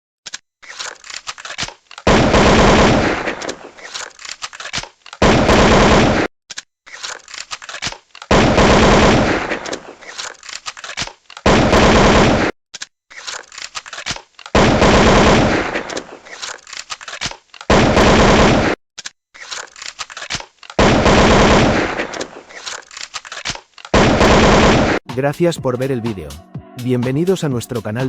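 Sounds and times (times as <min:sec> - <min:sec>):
rifle firing full-auto bursts: 0:02.1 - 0:03.6, 0:05.2 - 0:06.3, 0:08.3 - 0:09.8, 0:11.5 - 0:12.5, 0:14.6 - 0:16.1, 0:17.7 - 0:18.8, 0:20.8 - 0:22.2, 0:24.0 - 0:25.0.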